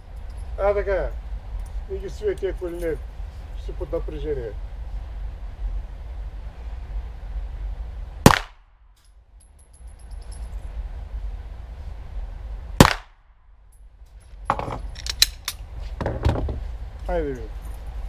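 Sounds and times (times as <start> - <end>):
pistol shots: 8.3 - 8.6, 12.8 - 13.2.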